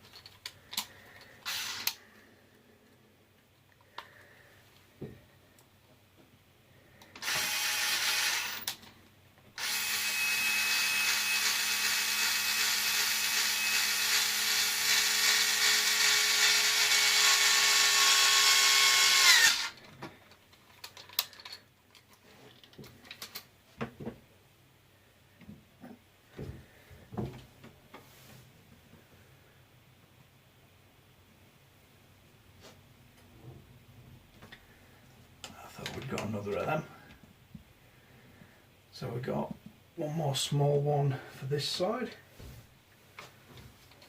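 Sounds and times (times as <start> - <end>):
electric screwdriver motor whine: 1.4 - 2.0, 7.2 - 8.8, 9.6 - 19.8.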